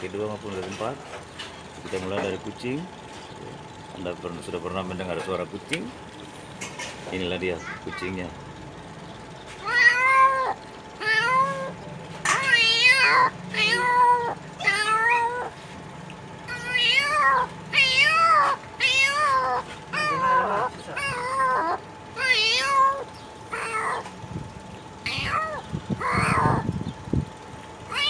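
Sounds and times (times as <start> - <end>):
man imitating cat meows: 12.4 - 15.5, 16.5 - 23.0, 25.1 - 26.6.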